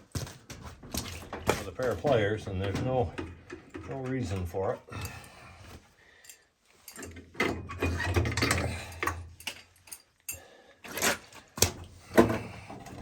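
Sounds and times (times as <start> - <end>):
metal tools clanking and rattling: 0.8 - 4.4, 6.2 - 11.3.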